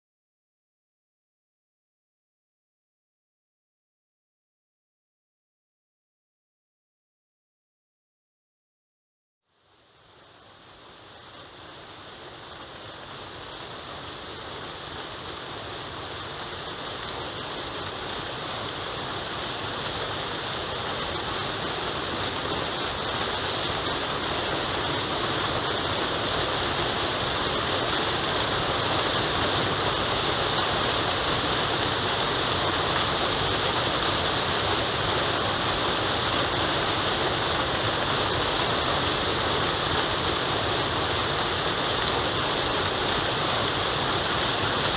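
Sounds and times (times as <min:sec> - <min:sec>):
waterfall rushing: 0:10.5 - 0:44.9.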